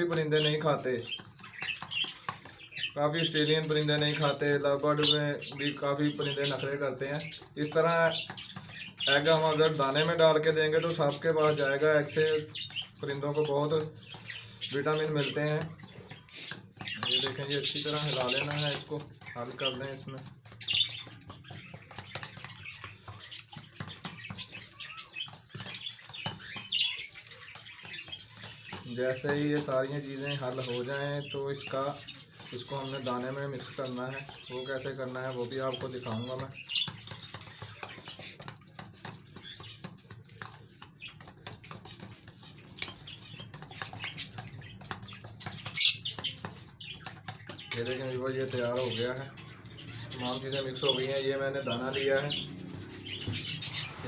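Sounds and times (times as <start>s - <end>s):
bird calling: 41.9s - 48.0s, 48.6s - 54.0s.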